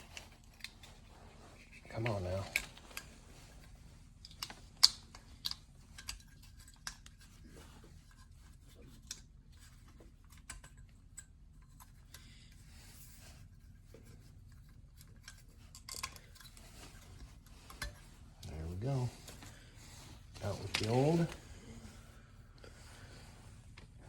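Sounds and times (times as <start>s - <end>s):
metal parts and tool clicking: 0.0s - 7.4s, 14.5s - 18.2s
low steady hum: 0.0s - 24.0s.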